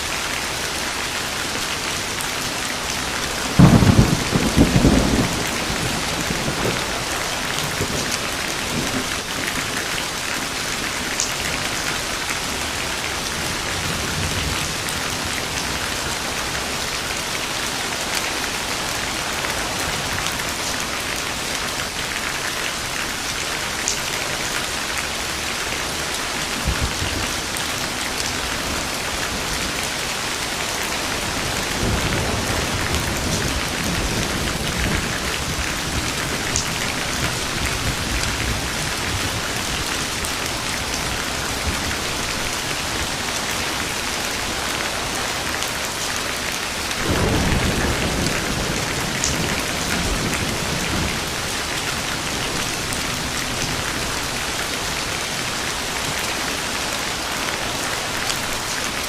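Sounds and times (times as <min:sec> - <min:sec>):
heavy rain falling: 0:00.0 - 0:59.0
distant thunder rumbling: 0:03.2 - 0:09.9, 0:47.0 - 0:51.6.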